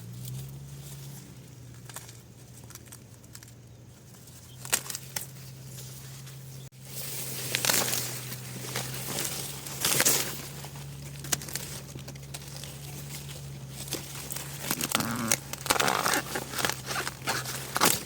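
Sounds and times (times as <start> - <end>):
rustling and crinkling: 0.0 - 18.0
clicks and crackles: 1.7 - 5.4, 7.4 - 18.0.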